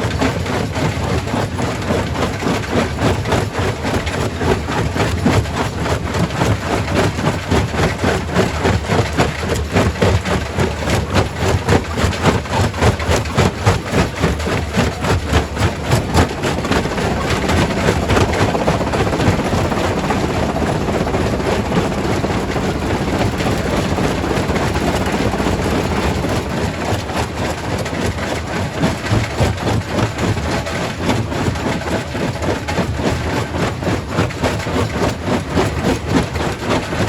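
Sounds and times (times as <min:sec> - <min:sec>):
heavy machinery noise: 0:03.1 - 0:29.5.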